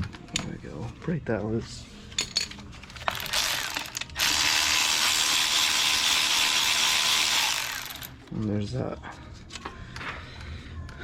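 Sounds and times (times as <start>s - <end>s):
power tool spinning fastener: 3.0s - 8.2s.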